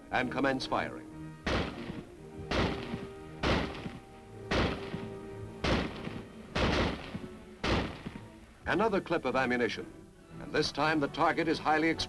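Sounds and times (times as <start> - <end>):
rifle shots: 1.5 - 8.6.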